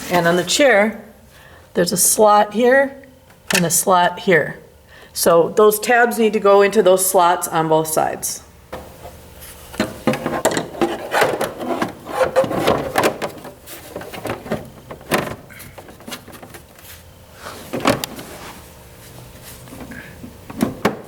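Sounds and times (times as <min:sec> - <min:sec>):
plastic rubbing and rattling: 0:09.8 - 0:18.6.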